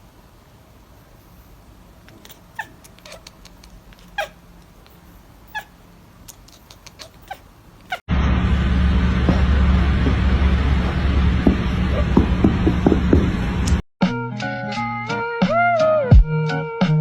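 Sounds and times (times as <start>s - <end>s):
cat meowing: 2.1s - 8.0s.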